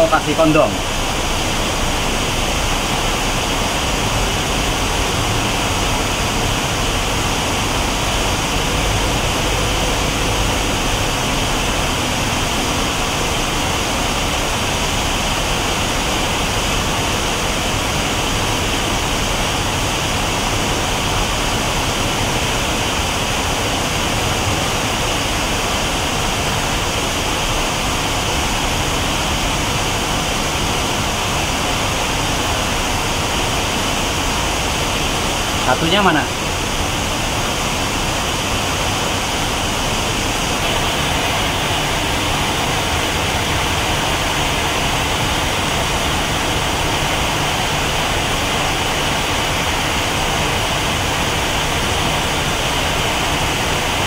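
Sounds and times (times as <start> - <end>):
machinery running: 40.5 - 47.2.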